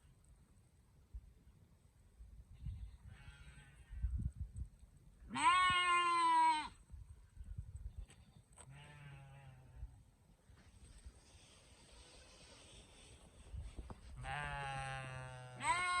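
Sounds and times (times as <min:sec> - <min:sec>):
sheep bleating: 0:05.3 - 0:06.8, 0:14.2 - 0:16.0.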